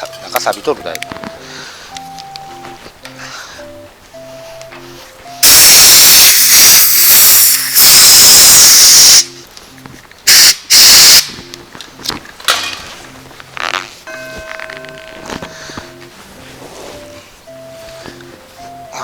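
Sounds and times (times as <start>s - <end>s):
faint background music with bass: 0.0s - 19.0s
pressurized gas jet hissing: 6.2s - 9.3s, 10.3s - 11.3s.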